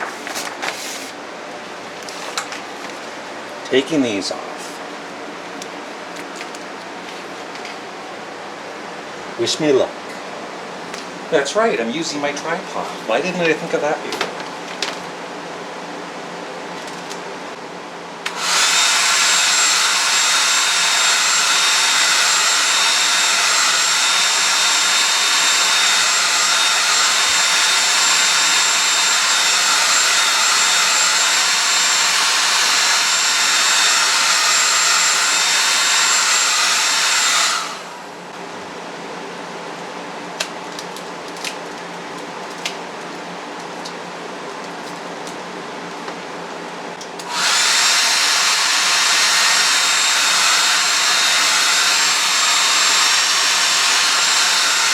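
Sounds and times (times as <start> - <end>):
hair dryer blowing with whine: 18.2 - 38.1, 47.2 - 54.9.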